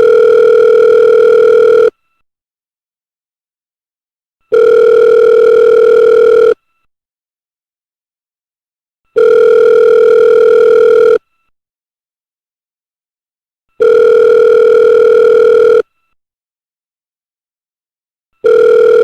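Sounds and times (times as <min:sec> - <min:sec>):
telephone ringing tone: 0:00.0 - 0:01.9, 0:04.5 - 0:06.6, 0:09.2 - 0:11.2, 0:13.8 - 0:15.8, 0:18.4 - 0:19.0.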